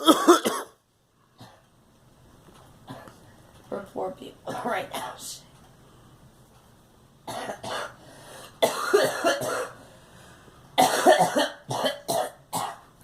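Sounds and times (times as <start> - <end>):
girl coughing: 0.0 - 0.8, 7.3 - 8.0, 8.6 - 9.8, 10.8 - 12.9.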